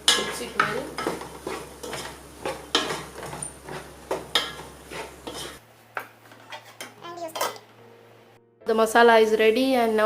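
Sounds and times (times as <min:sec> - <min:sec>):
spoon scraping a cooking pan: 0:00.0 - 0:05.6, 0:06.2 - 0:07.5.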